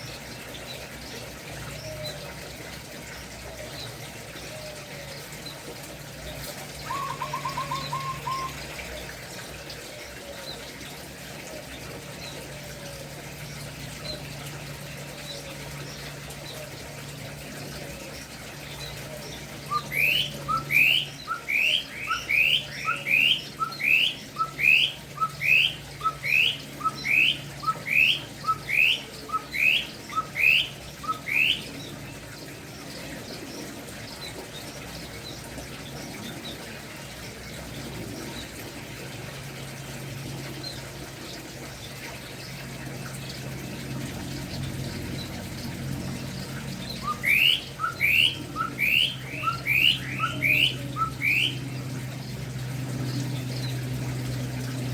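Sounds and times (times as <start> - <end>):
songbird calling upslurred notes: 6.3 - 10.7, 17.9 - 38.4, 46.2 - 54.0.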